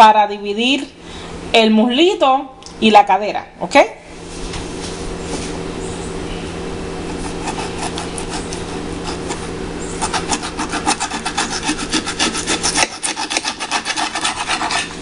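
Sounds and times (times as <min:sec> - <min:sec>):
knife sawing through chicken: 0:07.0 - 0:15.0.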